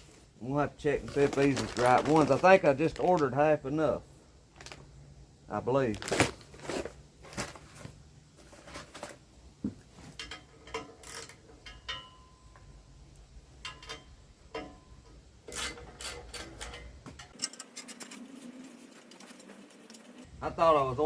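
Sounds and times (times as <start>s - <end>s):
packets rustling and clinking: 1.0s - 3.3s, 5.9s - 11.4s.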